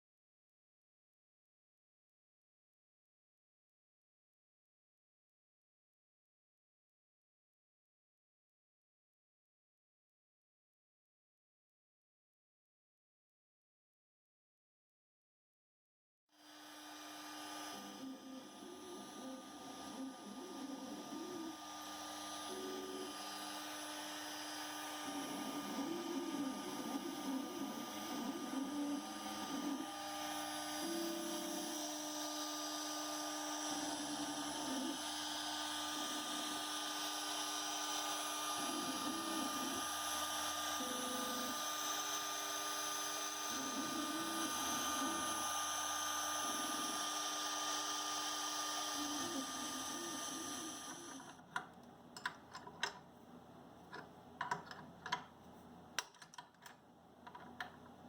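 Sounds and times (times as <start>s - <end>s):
cnc router whine: 16.4s - 51.4s
stepper motor tones: 16.4s - 51.5s.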